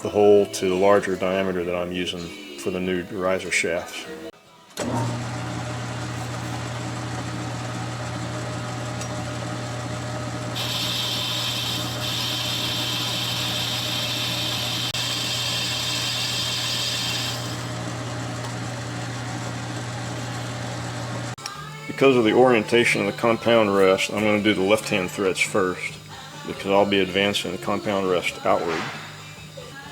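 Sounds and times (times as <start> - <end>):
lathe motor hum: 4.8 - 29.6
high-pitched metal cutting: 10.6 - 17.7.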